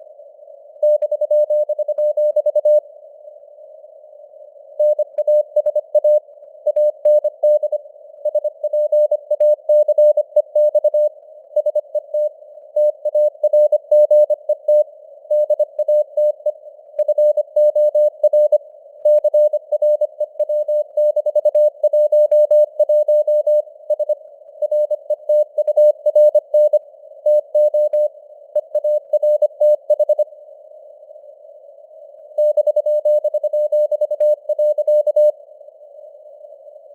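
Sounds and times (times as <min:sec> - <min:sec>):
morse code beeps: 0:00.8 - 0:02.8, 0:04.8 - 0:30.2, 0:32.4 - 0:35.3.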